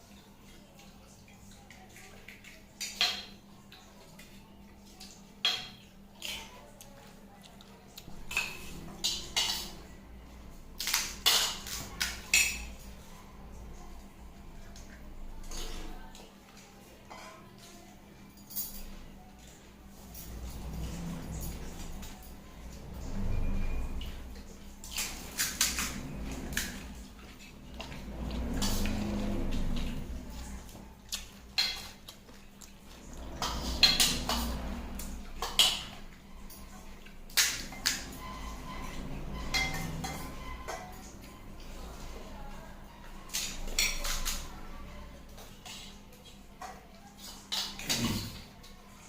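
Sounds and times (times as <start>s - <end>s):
dishes and cutlery clinking: 0.4s - 13.2s, 13.8s - 49.0s
soft chewing: 3.6s - 8.3s, 26.8s - 33.2s
dishware clinking: 37.4s - 41.1s.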